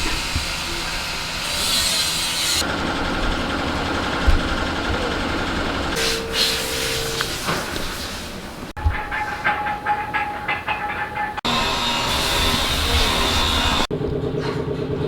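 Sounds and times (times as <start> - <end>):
workshop machinery running: 0.0 - 8.8, 11.4 - 15.0
machine whine: 11.5 - 15.0.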